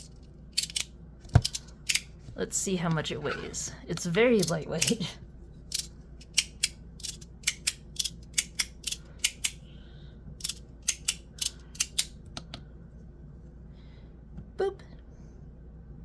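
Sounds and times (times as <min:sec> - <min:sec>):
fidget toy plates clicking: 0:00.5 - 0:02.1, 0:05.7 - 0:09.6, 0:10.4 - 0:12.2.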